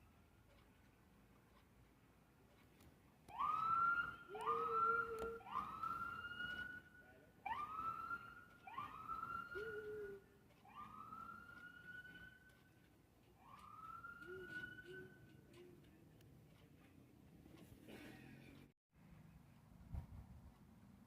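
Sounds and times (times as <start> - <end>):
police siren whooping: 3.3 - 6.8, 7.5 - 12.4, 13.4 - 15.1.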